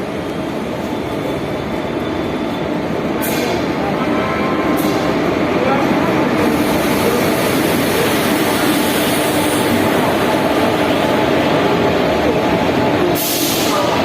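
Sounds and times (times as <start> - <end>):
train running at platform: 0.0 - 14.0
chatter of many voices: 3.0 - 14.0.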